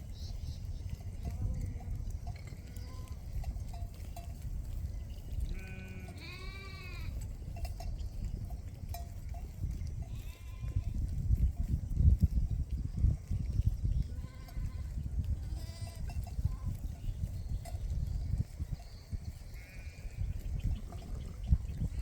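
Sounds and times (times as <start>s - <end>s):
sheep bleating: 2.6s - 3.2s, 5.5s - 7.2s, 10.1s - 11.0s, 14.2s - 16.1s, 19.6s - 20.3s.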